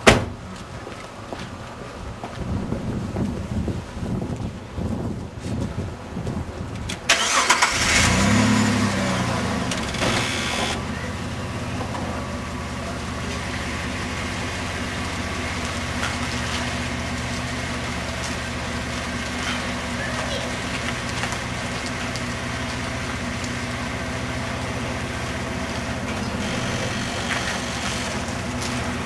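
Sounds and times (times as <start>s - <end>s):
car engine starting and idling: 6.6s - 29.0s.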